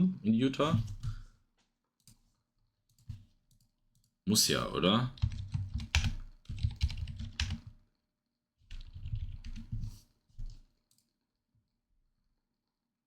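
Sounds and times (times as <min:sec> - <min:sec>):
typing on computer keyboard: 0:05.2 - 0:07.8, 0:08.7 - 0:09.8.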